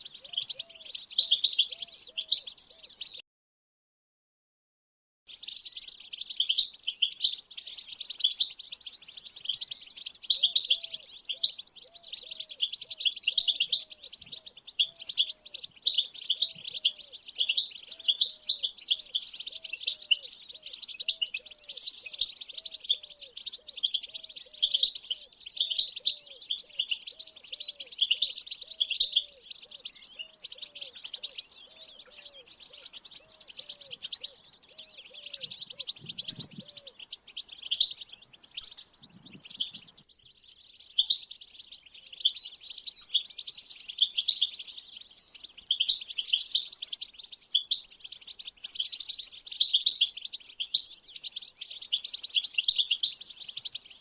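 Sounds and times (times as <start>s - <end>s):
bird twittering song: 0.0s - 3.2s, 5.3s - 54.0s.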